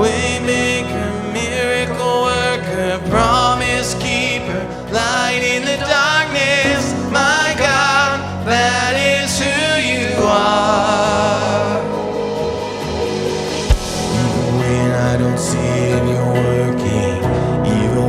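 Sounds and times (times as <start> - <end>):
band accompaniment: 8.3 - 16.6.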